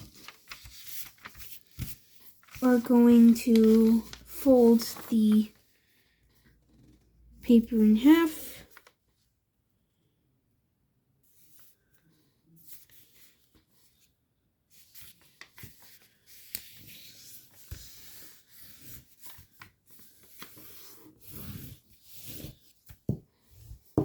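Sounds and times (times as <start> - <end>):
paper fold rubbed flat: 0.0 - 5.5, 14.8 - 23.9
paper rustling and crinkling: 0.0 - 5.6, 14.8 - 23.0.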